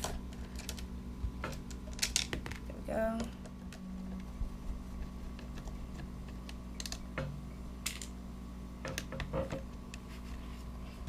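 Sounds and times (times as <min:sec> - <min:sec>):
faint steady hum: 0:00.0 - 0:11.0
small plastic parts clicking: 0:06.3 - 0:08.1.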